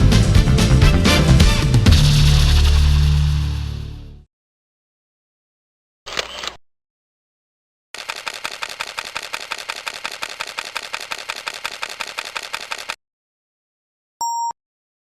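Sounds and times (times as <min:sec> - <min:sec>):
rapid train of clicks: 0:08.0 - 0:13.0.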